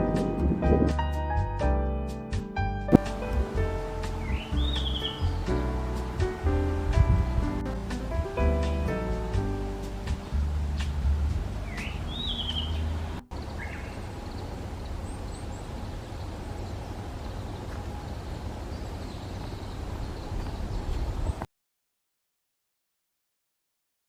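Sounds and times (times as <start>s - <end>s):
bird calls: 4.2s - 5.5s, 11.6s - 21.4s.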